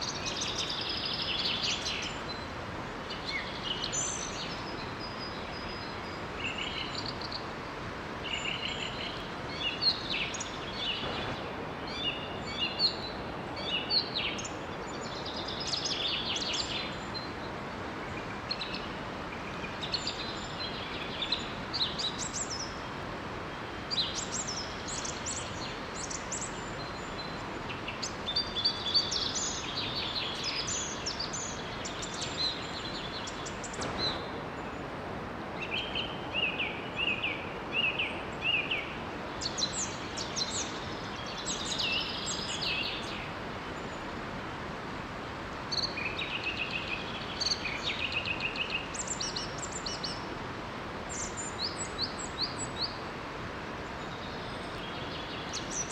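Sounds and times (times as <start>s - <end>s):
birds chirping: 0.0s - 17.5s, 18.2s - 44.0s.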